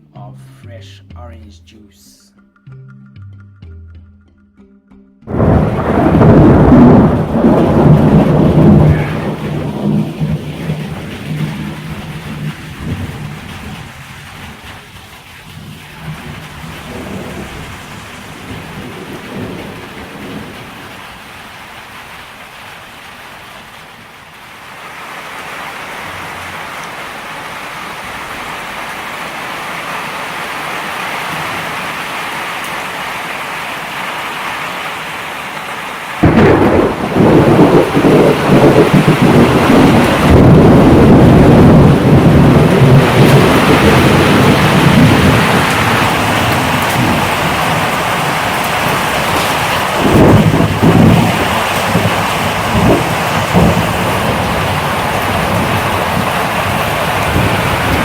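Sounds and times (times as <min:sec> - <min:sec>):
loud thunderclap and rumbling: 0:05.3 - 0:21.4, 0:36.2 - 0:58.0
heavy rain hissing: 0:05.3 - 0:58.0.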